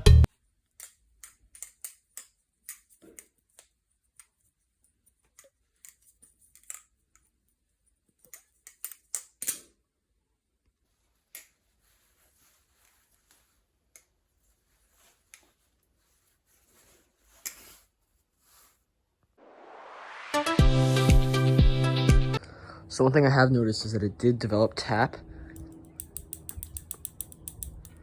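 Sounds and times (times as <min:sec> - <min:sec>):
butterfly knife metallic clicks: 0:25.5 - 0:28.0.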